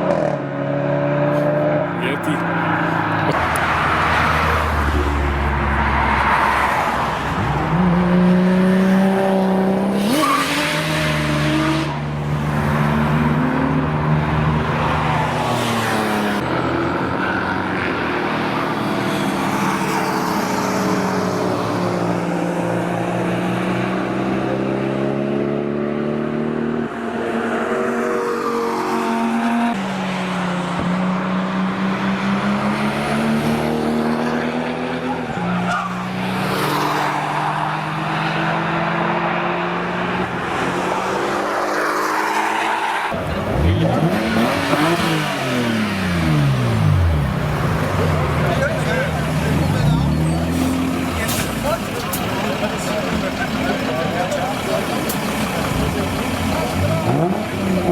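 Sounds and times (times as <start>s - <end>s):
car engine revving: 23.2s - 57.9s.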